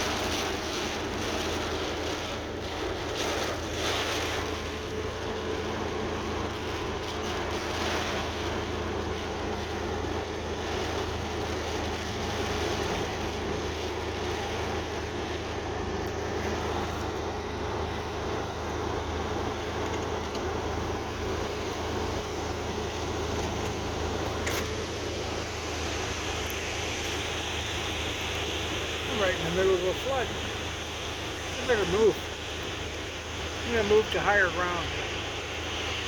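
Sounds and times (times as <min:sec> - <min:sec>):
heavy rain pouring: 0:00.0 - 0:36.0.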